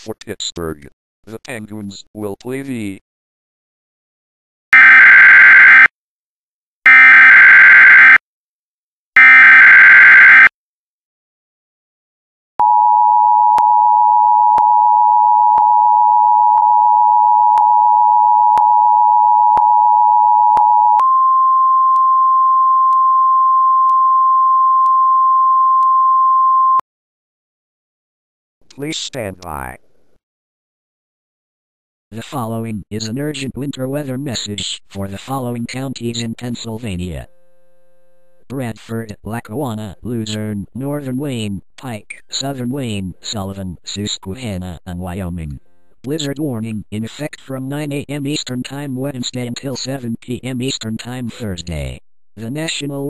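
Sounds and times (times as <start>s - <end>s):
single steady tone: 12.6s - 26.8s.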